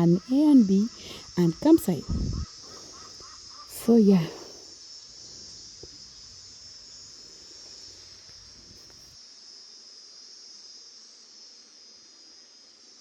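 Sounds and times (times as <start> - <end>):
crickets chirring: 0.0 - 13.0.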